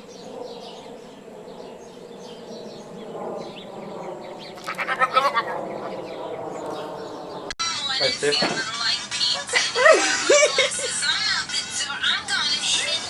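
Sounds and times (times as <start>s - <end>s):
rapid pulsed bird calls: 0.0s - 7.5s.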